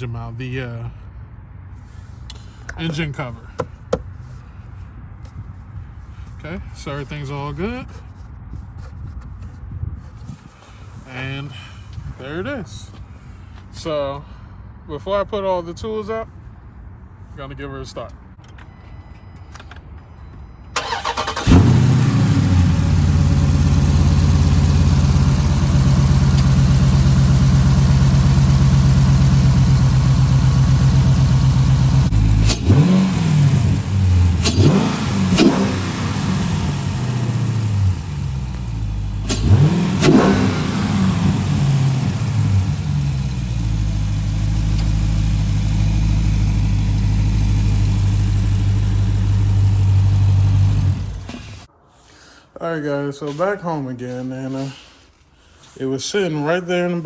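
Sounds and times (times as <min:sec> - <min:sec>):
car engine starting and idling: 0:20.8 - 0:51.7
engine revving: 0:20.8 - 0:51.7.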